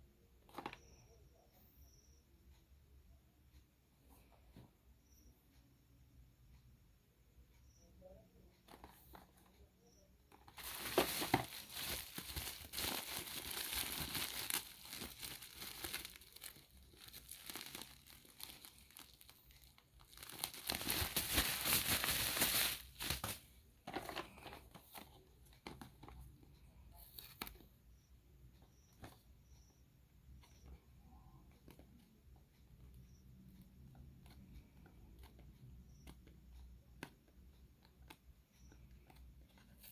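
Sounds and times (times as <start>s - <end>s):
packaging crinkling and tearing: 10.6s - 23.4s.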